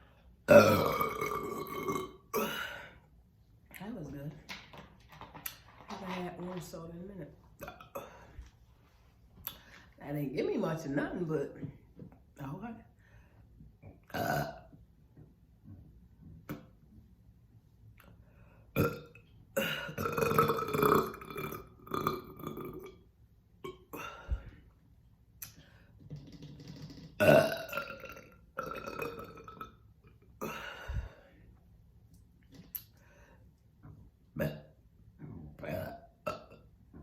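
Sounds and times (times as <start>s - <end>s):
woman burping: 0.5s - 3.0s, 7.6s - 8.4s, 14.1s - 14.7s, 18.8s - 23.0s, 23.6s - 24.5s, 27.2s - 29.8s, 30.4s - 31.0s, 34.4s - 34.8s, 35.4s - 36.7s.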